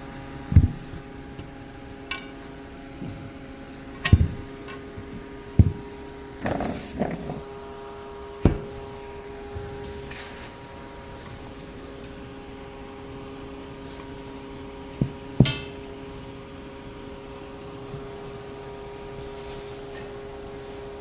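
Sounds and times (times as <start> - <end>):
steady low hum: 0.0 - 21.0
sharp knocks with metallic ring: 15.4 - 15.8.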